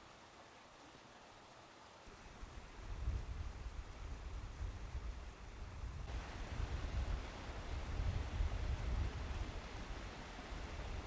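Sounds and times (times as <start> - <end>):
faint steady hiss: 0.0 - 11.0
wind buffeting microphone: 2.4 - 11.0.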